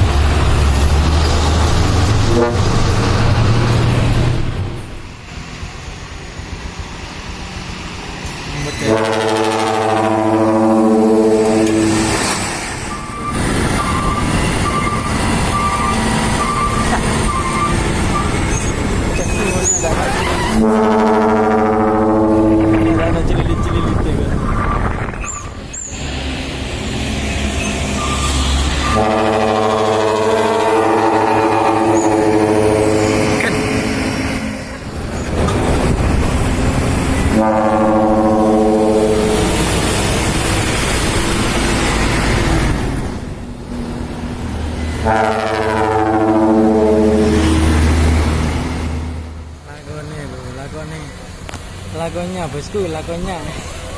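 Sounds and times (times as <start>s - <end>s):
truck engine and tyre noise: 0.0s - 53.9s
truck air horn chord: 2.3s - 2.8s, 8.8s - 12.4s, 20.6s - 23.1s, 28.8s - 34.8s, 37.3s - 39.5s, 45.0s - 47.7s
short high beeps: 12.9s - 18.3s.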